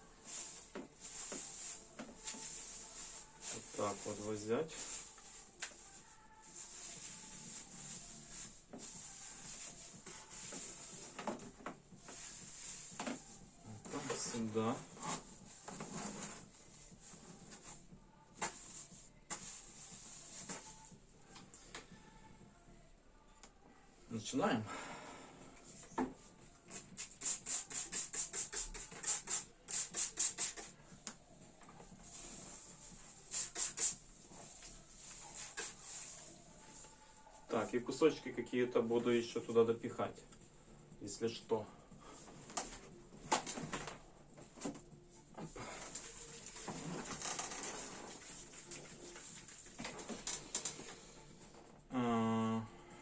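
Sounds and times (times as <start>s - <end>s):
expanding foam spray hissing: 33.2s - 34.0s.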